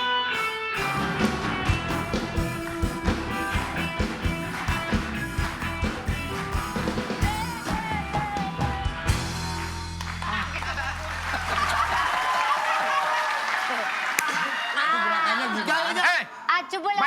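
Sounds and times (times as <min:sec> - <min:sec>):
house band playing rock: 0:00.0 - 0:10.5
steady drum beat: 0:00.8 - 0:11.2.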